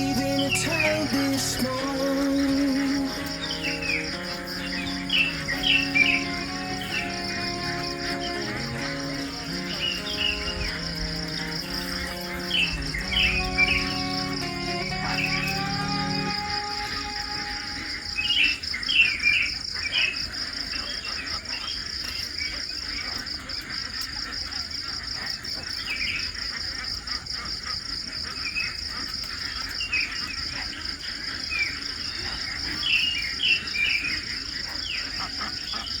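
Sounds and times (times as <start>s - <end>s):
high bird chirps: 0.0s - 19.2s
insects trilling: 0.0s - 36.0s.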